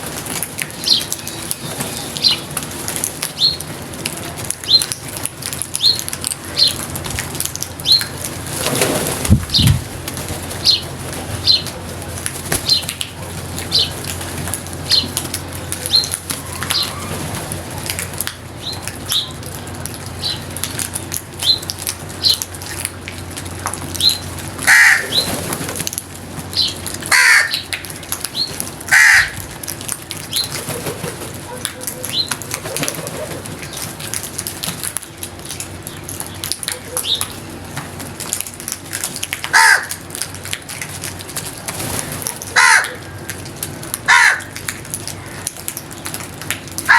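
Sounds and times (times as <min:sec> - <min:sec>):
crows cawing: 0:24.6 - 0:25.2, 0:27.1 - 0:27.7, 0:28.9 - 0:29.4, 0:39.5 - 0:40.0, 0:42.5 - 0:43.3, 0:44.0 - 0:45.4.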